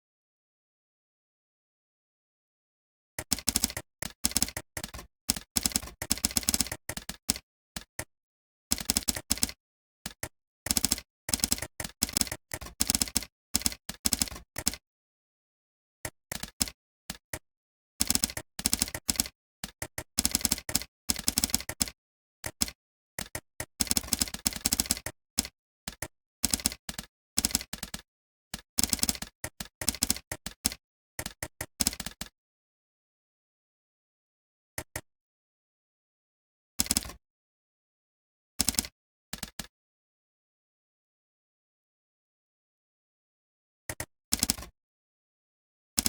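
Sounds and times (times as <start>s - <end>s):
typing on keyboard: 3.2s - 8.1s, 8.7s - 14.8s, 16.0s - 17.4s, 18.0s - 32.3s, 36.8s - 37.2s, 38.6s - 39.7s, 43.9s - 44.7s.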